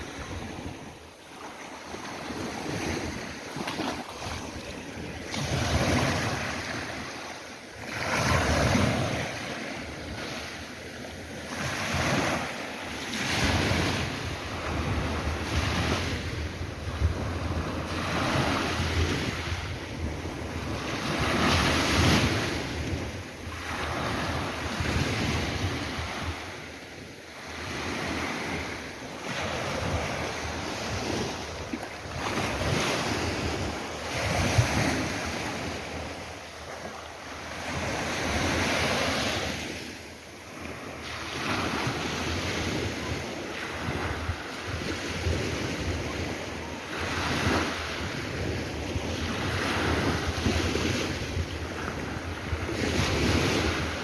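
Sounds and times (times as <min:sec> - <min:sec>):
sea waves breaking on shore: 0:00.0 - 0:54.0
wind buffeting microphone: 0:13.2 - 0:26.7, 0:41.4 - 0:54.0.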